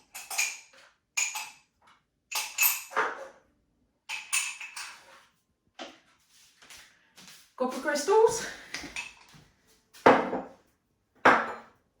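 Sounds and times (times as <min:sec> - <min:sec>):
crystals clinking against a cup: 0:00.1 - 0:01.6, 0:02.3 - 0:02.9.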